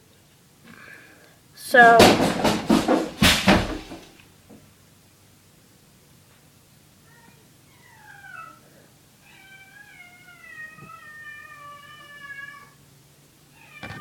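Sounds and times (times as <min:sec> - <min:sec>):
cat meowing: 0:07.1 - 0:12.8, 0:13.5 - 0:14.0.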